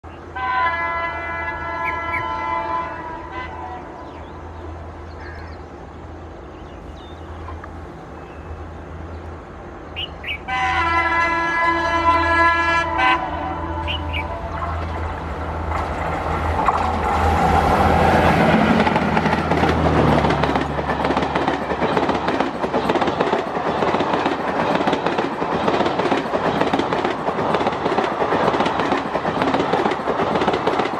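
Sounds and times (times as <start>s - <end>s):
train rumble: 0.0s - 30.9s
hoarse locomotive horn blasts: 0.3s - 4.0s, 10.3s - 15.0s.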